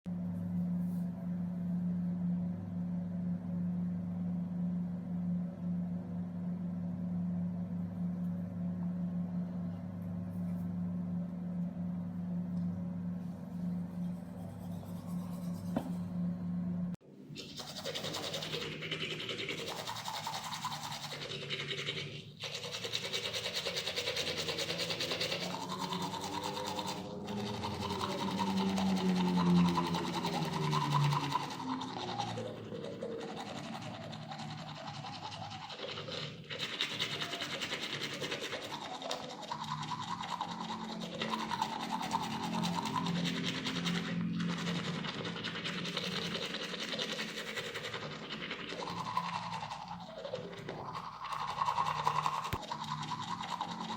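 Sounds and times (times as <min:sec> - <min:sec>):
toothbrush scrubbing teeth: 0:13.6 - 0:16.1, 0:17.4 - 0:53.9.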